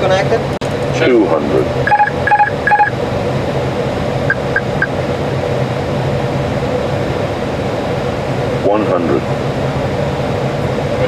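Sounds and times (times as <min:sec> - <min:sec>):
cockpit airflow and engine hum: 0:00.0 - 0:11.0
short electronic alert tones: 0:01.9 - 0:02.9, 0:04.3 - 0:04.9.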